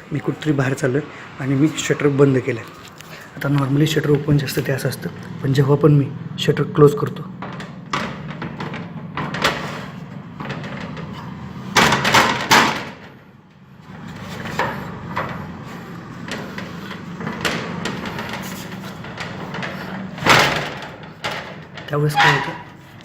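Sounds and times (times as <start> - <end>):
shutter scraping and clattering: 1.6 - 5.6, 7.2 - 23.0
knocking: 6.9 - 23.0.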